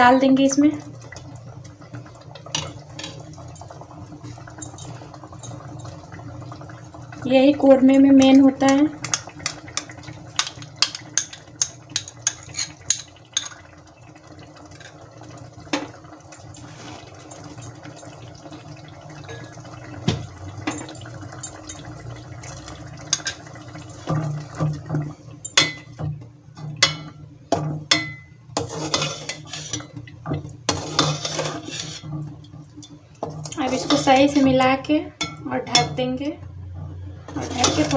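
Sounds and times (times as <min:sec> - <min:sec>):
metal spoon scraping cooking pot: 0:09.0 - 0:13.6, 0:28.6 - 0:30.0, 0:30.7 - 0:32.2, 0:33.5 - 0:35.9, 0:37.3 - 0:37.9.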